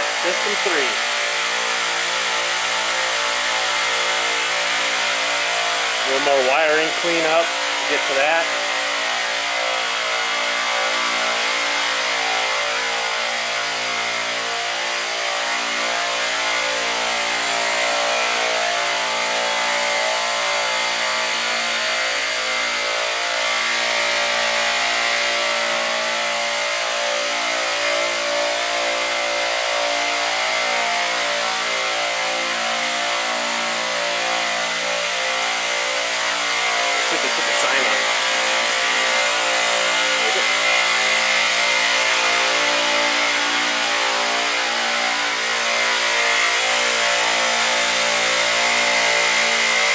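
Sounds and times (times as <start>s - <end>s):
compressors humming with hiss: 0.1s - 1.2s.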